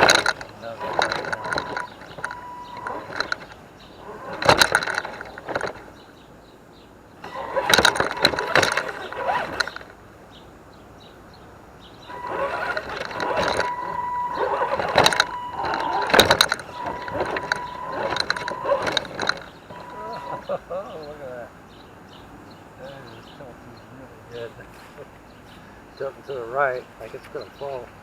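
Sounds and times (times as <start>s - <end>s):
rc car motor whine: 0.0s - 6.0s, 7.2s - 10.0s, 12.0s - 20.6s.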